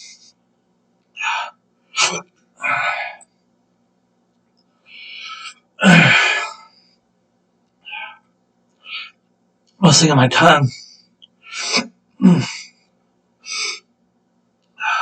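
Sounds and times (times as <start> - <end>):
man gasping and huffing: 5.0 - 6.6.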